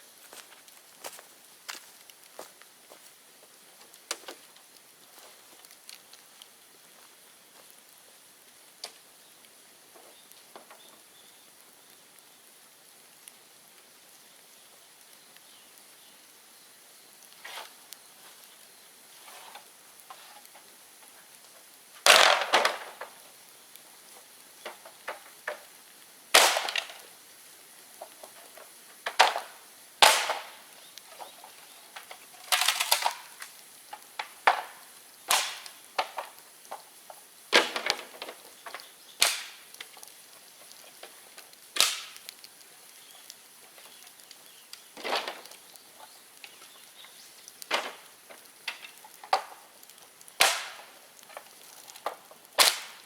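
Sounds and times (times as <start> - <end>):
bonfire crackling: 0.0 - 53.0
bamboo popping and cracking: 22.0 - 25.7, 26.3 - 27.1, 27.9 - 53.0.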